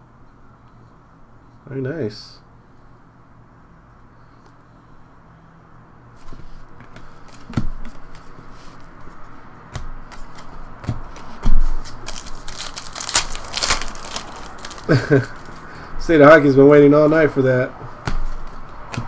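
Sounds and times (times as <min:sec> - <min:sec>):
cards rustling and sliding: 0:10.0 - 0:15.9
foil wrapper crinkling: 0:11.8 - 0:15.8.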